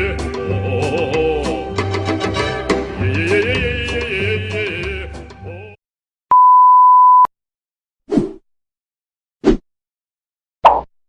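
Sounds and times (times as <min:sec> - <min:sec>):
music: 0:00.0 - 0:05.8
censor bleep: 0:06.3 - 0:07.3.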